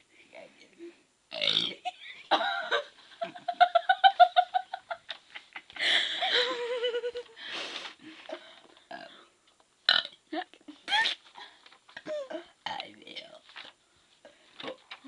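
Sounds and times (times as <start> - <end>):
girl giggling: 1.8 - 7.4, 10.7 - 11.2, 12.0 - 12.6.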